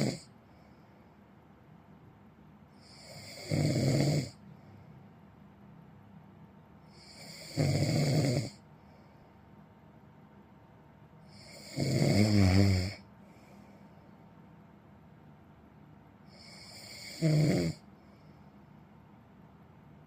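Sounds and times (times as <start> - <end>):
person snoring: 0.0 - 0.3, 2.8 - 4.4, 6.9 - 8.6, 11.3 - 13.0, 16.3 - 17.9.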